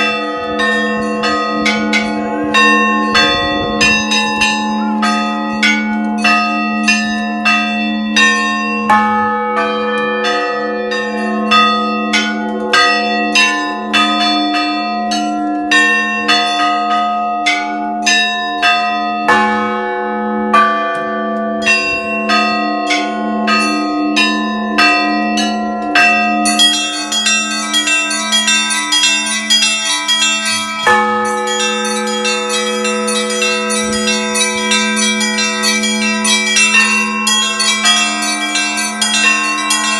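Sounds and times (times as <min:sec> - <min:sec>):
middle bells striking: 0:00.0 - 0:39.9
small bells chiming fast: 0:21.6 - 0:39.9
low bell humming: 0:26.4 - 0:39.9.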